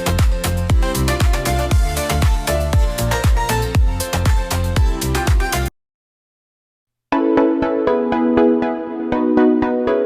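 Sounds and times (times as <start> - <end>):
dance music with bass drum: 0.0 - 5.7.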